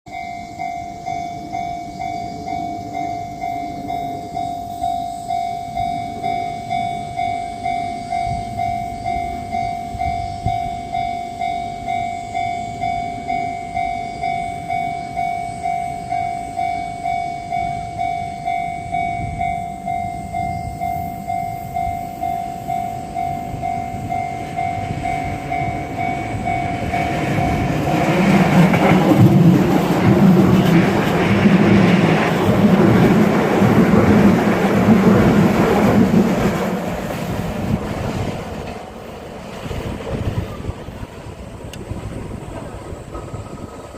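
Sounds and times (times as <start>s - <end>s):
level crossing bell ringing: 0.1s - 28.1s
train rumble: 0.1s - 43.9s.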